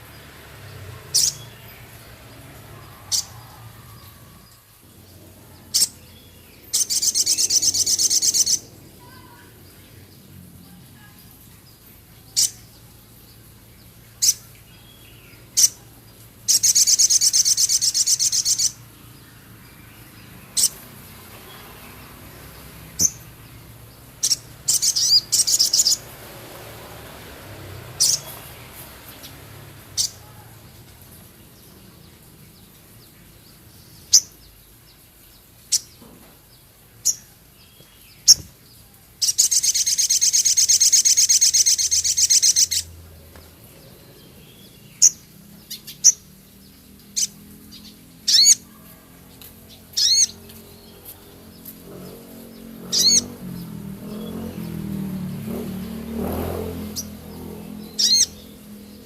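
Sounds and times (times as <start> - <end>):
bird high chirps: 1.0 - 2.1, 5.6 - 10.1, 11.0 - 13.5, 14.1 - 18.9, 19.8 - 21.0, 24.2 - 26.1, 28.0 - 28.5, 37.0 - 42.9, 47.0 - 49.0, 49.6 - 59.0.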